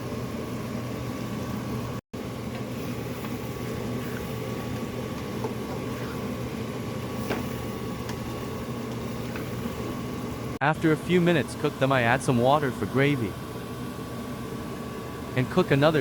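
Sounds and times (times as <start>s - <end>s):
food simmering bubbling hiss: 0.0s - 11.6s.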